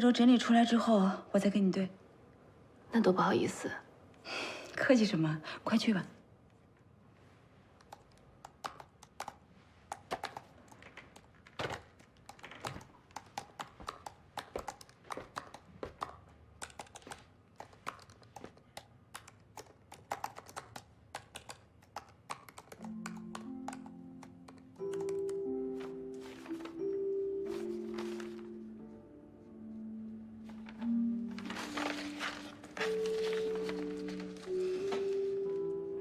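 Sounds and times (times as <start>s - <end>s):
background music: 22.3s - 36.0s.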